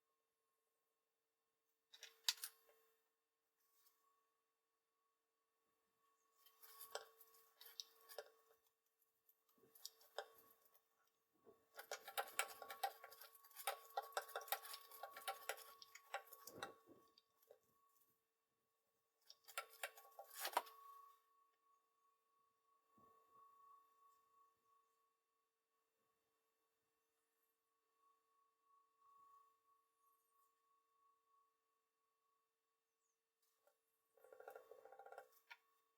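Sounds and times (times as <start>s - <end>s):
painting tools scratching and tapping: 6.4s - 8.6s, 9.6s - 10.8s, 11.5s - 17.6s, 19.3s - 20.8s, 34.2s - 35.6s.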